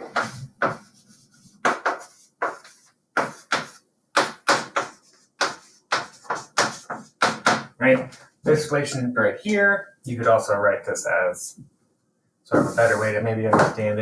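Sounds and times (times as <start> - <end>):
scratchy writing on a board: 0.0 - 8.2.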